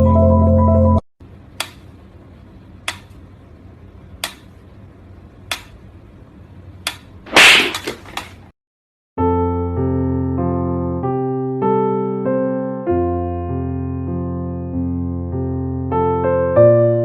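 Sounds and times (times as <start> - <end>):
electric piano music: 0.0 - 1.0, 9.2 - 17.0.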